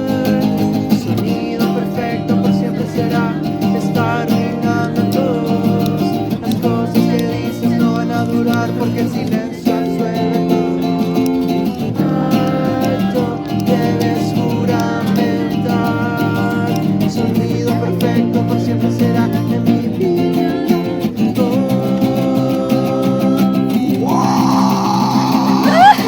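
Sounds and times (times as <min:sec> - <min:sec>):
strummed acoustic guitar: 0:00.0 - 0:26.0
person singing: 0:20.0 - 0:26.0.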